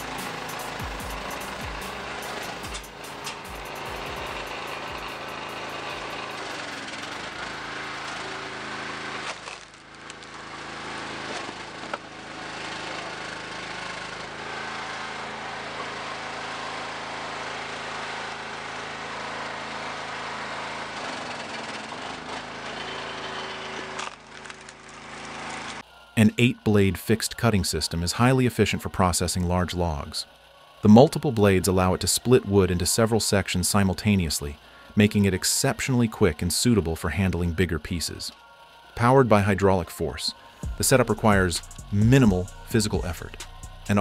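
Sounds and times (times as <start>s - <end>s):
log splitter engine running: 0.0s - 44.0s
wood cracking and splitting: 6.0s - 12.1s, 23.8s - 25.8s.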